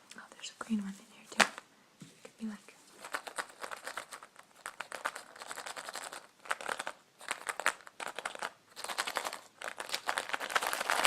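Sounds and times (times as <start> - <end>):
plastic crinkling: 2.9 - 11.0.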